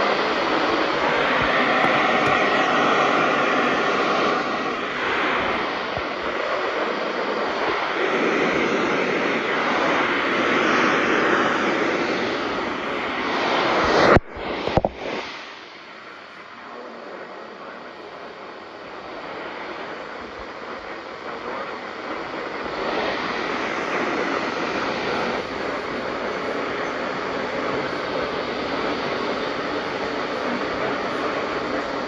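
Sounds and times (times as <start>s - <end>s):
faint steady tones: 0.0s - 32.0s
radio static hiss: 0.0s - 32.0s.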